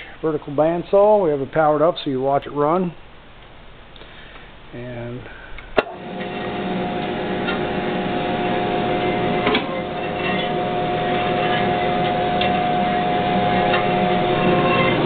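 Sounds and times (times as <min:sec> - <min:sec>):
band saw motor hum: 0:05.9 - 0:15.0.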